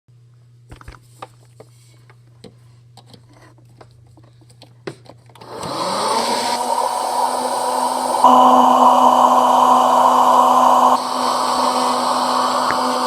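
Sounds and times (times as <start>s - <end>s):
popcorn maker fan whirring: 5.4s - 13.0s
steady low hum: 8.2s - 11.0s.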